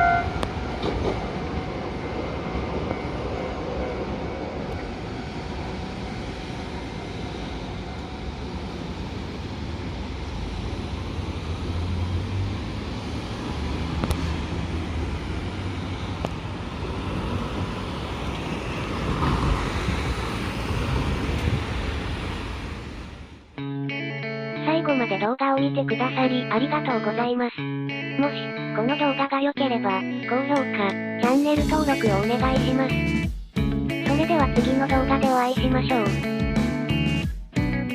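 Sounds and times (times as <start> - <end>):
train rumbling past: 0.0 - 23.5.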